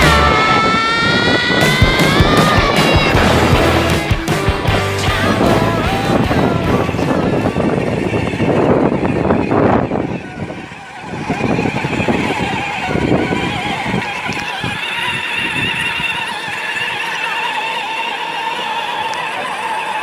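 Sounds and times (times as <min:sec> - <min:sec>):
toy car motor whine: 0:00.0 - 0:20.0.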